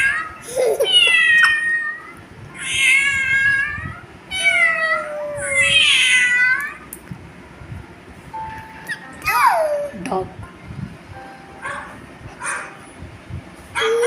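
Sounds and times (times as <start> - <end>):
cat meowing: 0.0 - 6.8.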